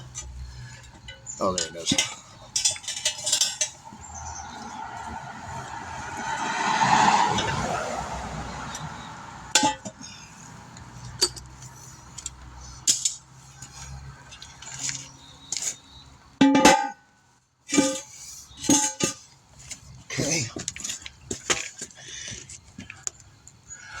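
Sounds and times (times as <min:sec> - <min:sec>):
vehicle passing by: 0:03.8 - 0:15.4.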